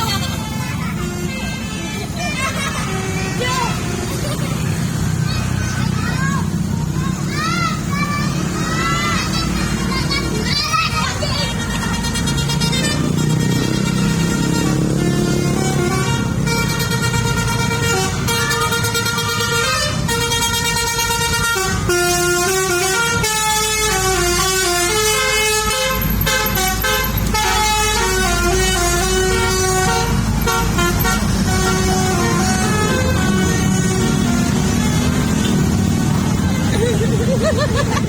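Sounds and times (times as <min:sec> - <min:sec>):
bus musical horn playing a tune: 0:00.0 - 0:04.9, 0:11.3 - 0:36.7
low engine rumble: 0:00.0 - 0:38.0.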